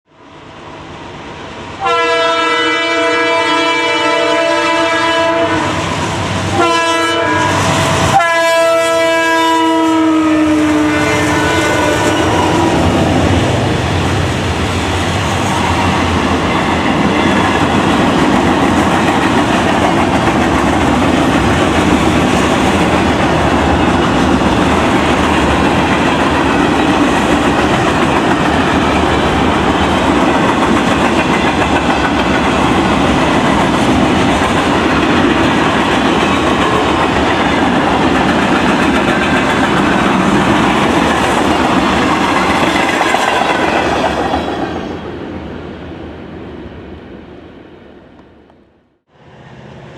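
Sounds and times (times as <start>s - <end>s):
freight train wheels clattering: 11.9s - 44.7s.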